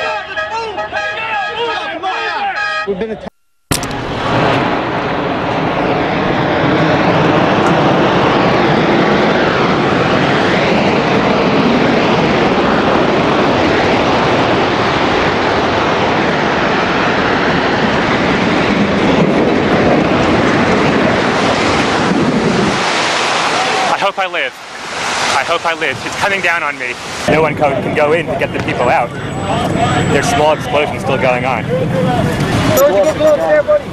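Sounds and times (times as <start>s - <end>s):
building collapse rumbling roar: 3.8s - 24.5s.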